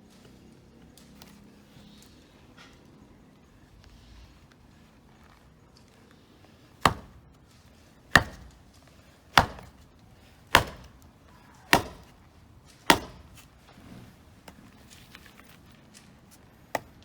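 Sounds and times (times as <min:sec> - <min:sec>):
hatchet chopping wood: 0:06.7 - 0:14.6, 0:16.7 - 0:17.0.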